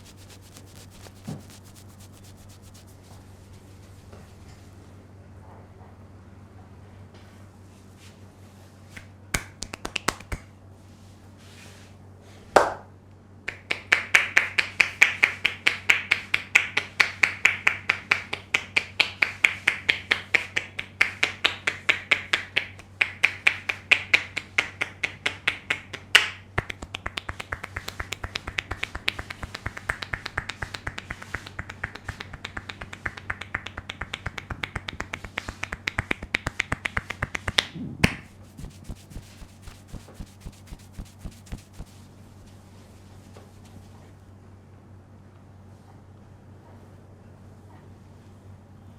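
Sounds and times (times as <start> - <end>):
hands snapping on scalp: 0.0 - 3.0, 9.0 - 10.5, 26.2 - 42.0.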